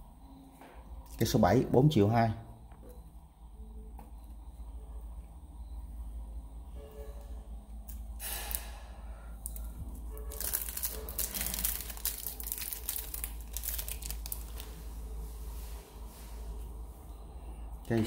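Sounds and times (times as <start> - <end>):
wrapping crinkling and rustling: 9.4 - 16.5.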